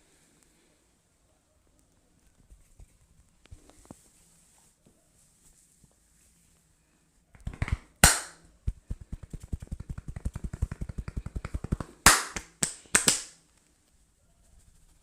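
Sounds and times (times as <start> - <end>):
hands slapping and tapping: 7.3 - 13.4
sharp hand claps: 7.4 - 8.4, 9.2 - 13.4.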